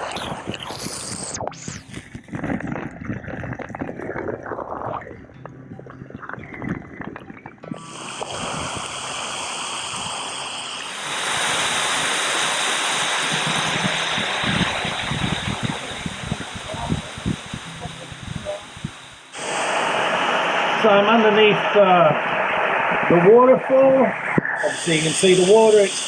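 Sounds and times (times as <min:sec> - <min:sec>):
water splashing and lapping: 0:00.0 - 0:20.8
waterfall rushing: 0:07.6 - 0:26.0.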